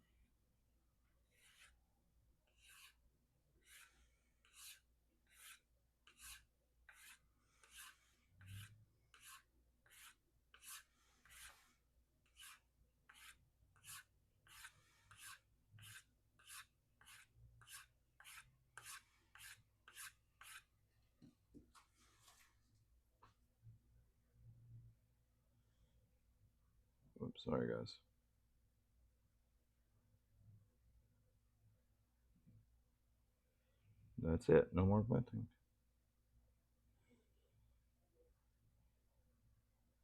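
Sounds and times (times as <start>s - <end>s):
knife blade rubbing on strop: 2.5s - 3.0s, 3.6s - 11.7s, 12.3s - 20.7s.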